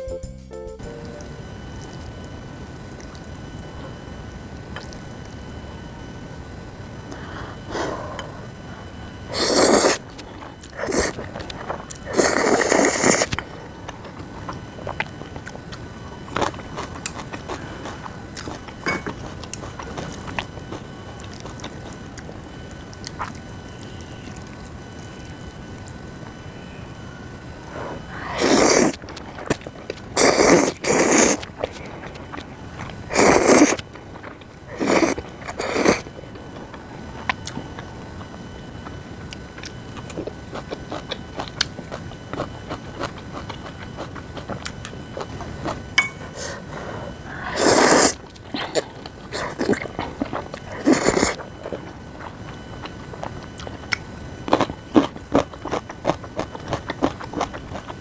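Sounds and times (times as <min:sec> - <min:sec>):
chewing with crisp crunches: 0:07.0 - 0:26.4, 0:27.0 - 0:58.0
noodle slurps: 0:09.3 - 0:10.0, 0:10.7 - 0:13.4, 0:27.7 - 0:32.3, 0:33.1 - 0:33.8, 0:34.7 - 0:36.1, 0:46.2 - 0:51.5.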